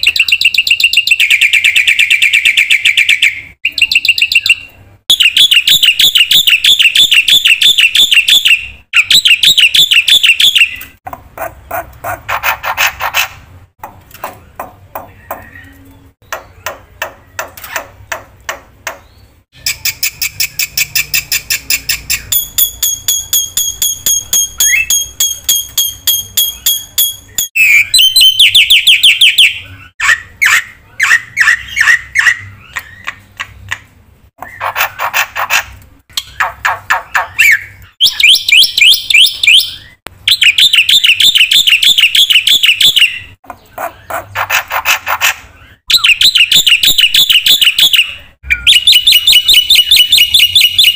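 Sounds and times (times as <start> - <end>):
bird singing varied phrases: 0.0 - 11.0, 18.8 - 33.8, 36.1 - 50.9.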